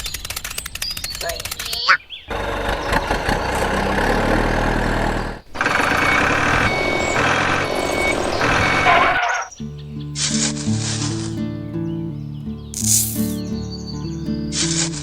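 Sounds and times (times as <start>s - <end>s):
truck engine running: 2.3s - 9.5s
reversing alarm beeping: 5.6s - 9.5s.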